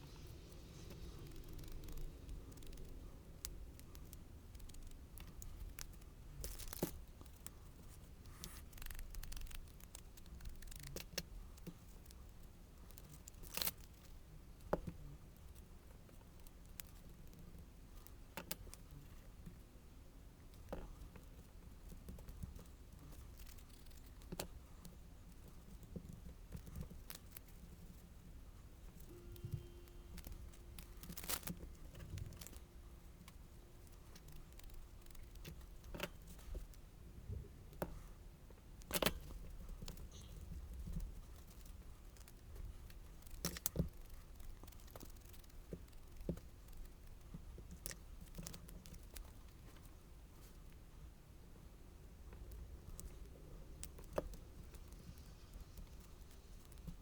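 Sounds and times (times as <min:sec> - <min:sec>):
low steady hum: 0:00.0 - 0:10.7, 0:18.8 - 0:57.0
faint paper rustling: 0:00.0 - 0:14.2, 0:20.5 - 0:50.9.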